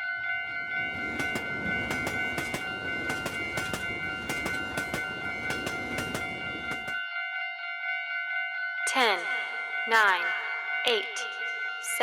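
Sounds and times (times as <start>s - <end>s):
low train rumble: 0.2s - 7.0s
steady high tones: 0.5s - 7.0s
train wheels clacking: 0.5s - 7.0s.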